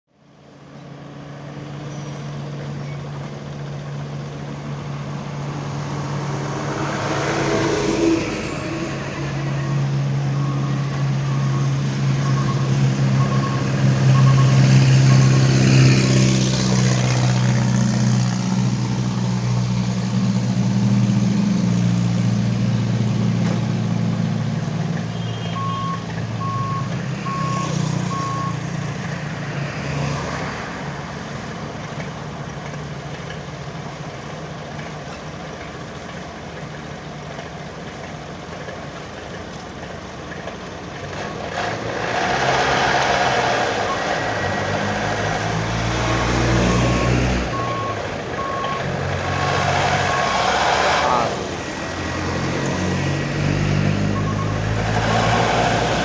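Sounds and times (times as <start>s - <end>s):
diesel engine running: 0.3s - 29.7s, 30.8s - 56.0s
reversing alarm beeping: 9.4s - 15.6s, 25.2s - 28.8s, 46.5s - 49.0s, 50.0s - 50.6s, 54.0s - 54.8s.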